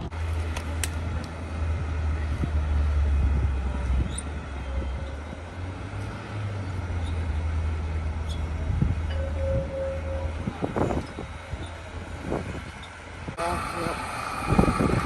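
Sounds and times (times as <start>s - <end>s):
car road and engine rumble: 0.0s - 15.0s.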